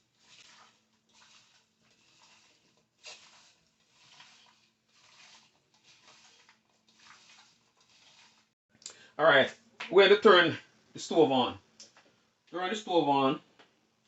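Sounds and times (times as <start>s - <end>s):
faint rustling and handling: 0.0s - 8.6s.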